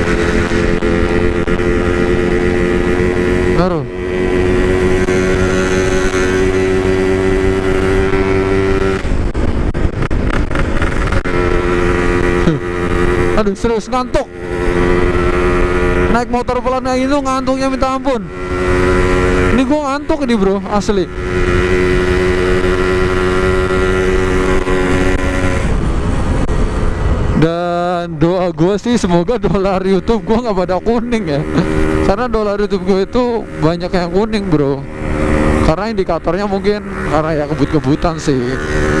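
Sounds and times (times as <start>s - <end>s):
wind noise: 0.0s - 17.2s, 18.2s - 27.6s
motorcycle engine running steadily: 0.0s - 39.0s
road noise: 0.0s - 39.0s.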